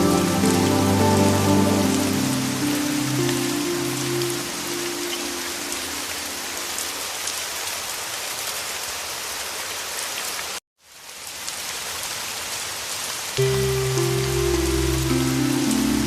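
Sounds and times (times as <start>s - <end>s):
music with low sustained tones: 0.0s - 5.5s, 13.4s - 16.0s
heavy rain: 0.0s - 16.0s.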